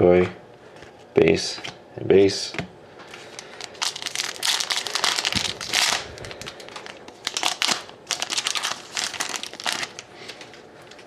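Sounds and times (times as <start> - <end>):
wrapper tearing and crinkling: 3.3 - 10.6.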